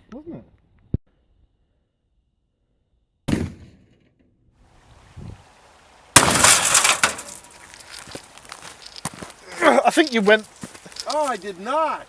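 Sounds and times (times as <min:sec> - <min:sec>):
shotgun bang: 0:03.3 - 0:04.0, 0:06.2 - 0:07.3
crash with breaking glass: 0:06.2 - 0:07.5.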